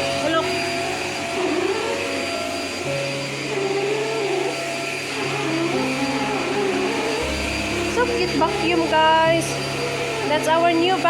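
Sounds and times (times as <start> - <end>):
stick vacuum cleaner running: 0.0 - 11.0.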